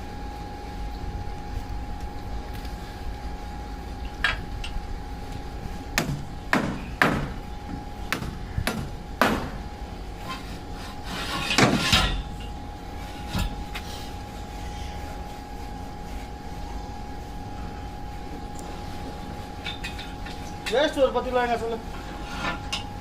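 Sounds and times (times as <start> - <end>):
faint steady hum: 0.0 - 23.0
sharp hammer-like knocks: 6.0 - 7.4, 8.1 - 9.6.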